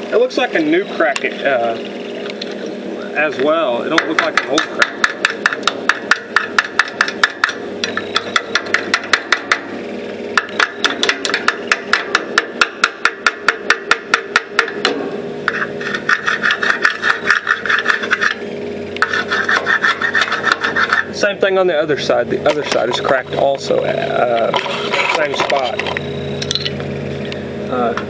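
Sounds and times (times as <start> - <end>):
tool tapping on steel: 3.9 - 9.7, 10.4 - 18.4
rasping scrape: 15.4 - 18.4, 19.0 - 21.4, 22.4 - 26.1.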